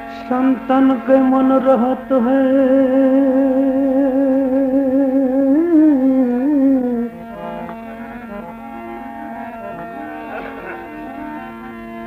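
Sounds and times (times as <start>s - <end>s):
steady drone: 3.3s - 12.0s.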